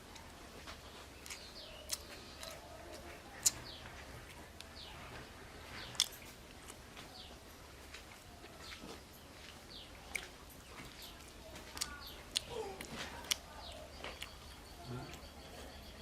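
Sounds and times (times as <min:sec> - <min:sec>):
person chewing food: 0:00.0 - 0:15.8
bird chirping: 0:00.8 - 0:04.0, 0:07.0 - 0:16.0.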